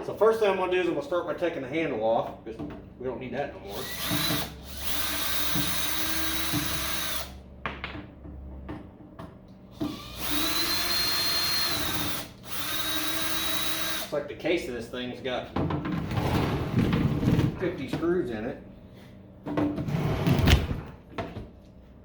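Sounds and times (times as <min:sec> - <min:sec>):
cordless drill motor whining: 0:03.7 - 0:07.4, 0:09.8 - 0:14.2.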